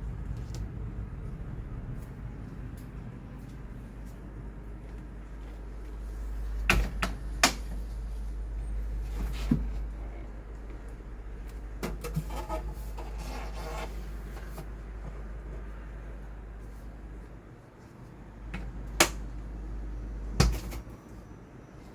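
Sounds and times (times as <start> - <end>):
steady low hum: 0.0 - 21.9.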